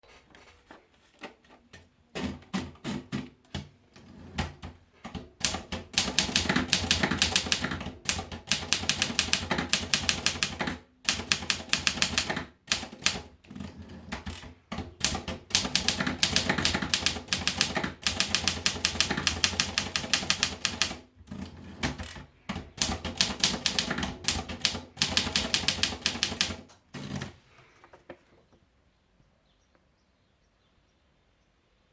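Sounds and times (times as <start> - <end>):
manual typewriter key strikes: 5.4 - 13.3, 14.2 - 27.3.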